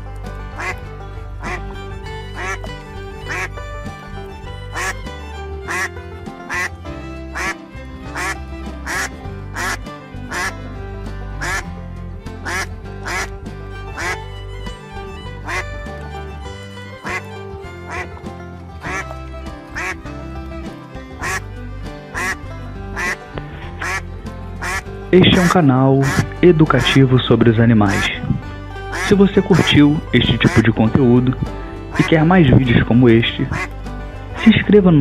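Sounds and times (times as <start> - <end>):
background music with bass: 0.0 - 35.0
duck quacking: 0.5 - 0.8, 1.4 - 1.7, 2.4 - 3.6, 4.7 - 5.0, 5.7 - 10.6, 11.4 - 11.7, 12.4 - 13.3, 13.9 - 14.2, 15.4 - 15.7, 17.9 - 18.2, 18.8 - 19.1, 19.8 - 20.0, 21.2 - 21.4, 22.1 - 26.9, 27.9 - 28.1, 28.9 - 29.2, 31.9 - 32.2, 33.5 - 33.8.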